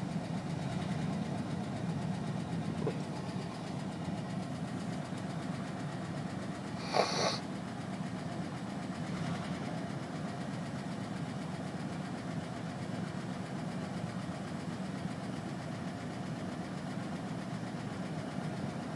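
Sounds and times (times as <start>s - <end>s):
van engine running: 0.0s - 18.9s
brief sharp noise: 6.8s - 7.4s.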